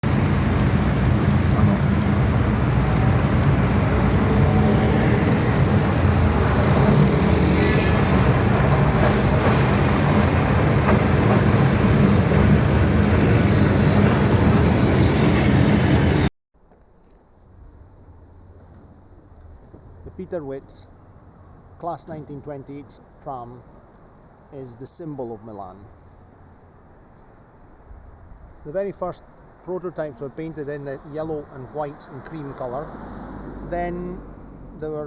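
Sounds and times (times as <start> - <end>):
tram rumbling: 0.0 - 16.3
faint ticks: 0.1 - 16.0.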